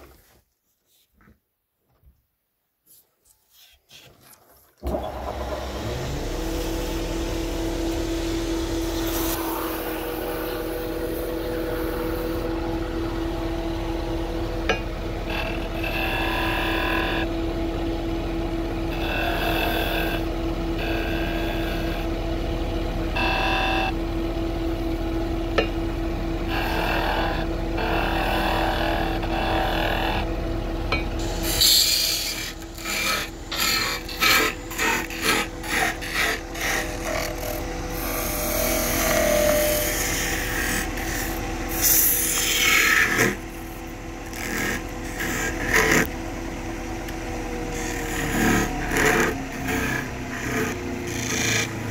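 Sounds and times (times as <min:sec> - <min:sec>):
tool cutting wood squealing: 0:04.8 - 0:12.6, 0:14.7 - 0:17.3, 0:18.8 - 0:22.1, 0:23.1 - 0:24.0, 0:26.4 - 0:30.4, 0:31.2 - 0:46.2, 0:47.1 - 0:51.9
lathe motor humming: 0:04.8 - 0:51.9.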